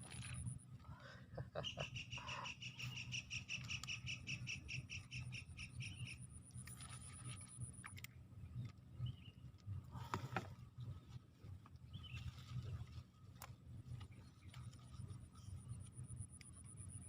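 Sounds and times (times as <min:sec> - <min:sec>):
insects high whine: 0:00.0 - 0:08.3, 0:14.0 - 0:17.0.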